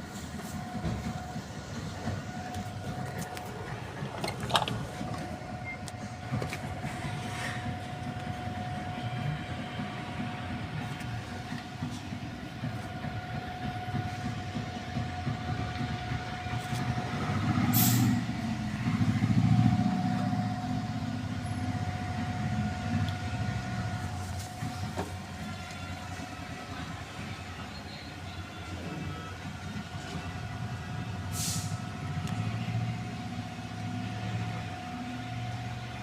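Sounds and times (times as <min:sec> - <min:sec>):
compressor whining and rumbling: 0:00.0 - 0:36.0.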